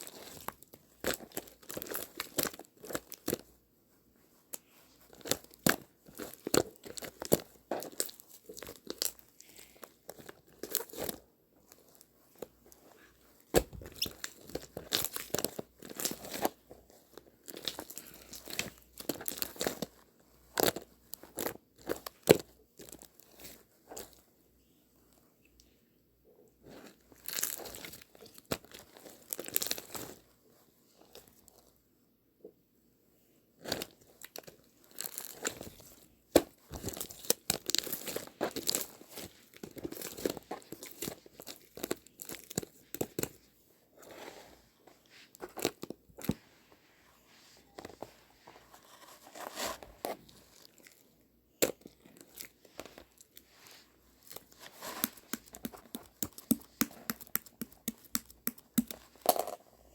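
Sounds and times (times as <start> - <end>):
crinkling and rustling handling: 0.0 - 32.0, 33.1 - 59.9
crinkling and tearing: 33.6 - 43.4, 48.7 - 59.9.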